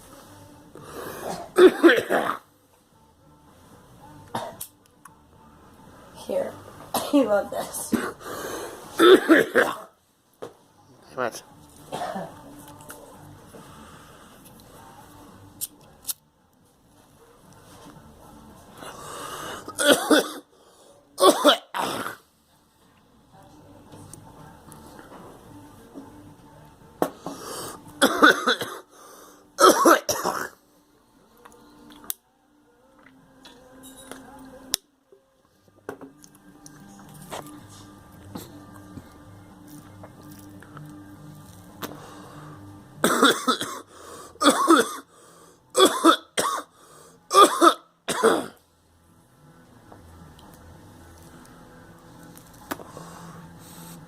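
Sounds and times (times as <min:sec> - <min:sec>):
person coughing hard: 0:01.2 - 0:02.4, 0:09.0 - 0:09.9, 0:11.9 - 0:12.4, 0:19.8 - 0:20.5, 0:21.2 - 0:22.2, 0:28.0 - 0:28.9, 0:29.6 - 0:30.6, 0:43.0 - 0:45.1, 0:45.8 - 0:46.7, 0:47.3 - 0:48.6.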